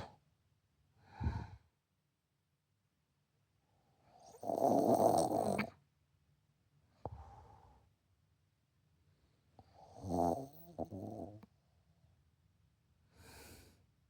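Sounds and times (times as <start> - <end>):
woman snoring heavily: 4.4 - 5.6, 10.0 - 11.4.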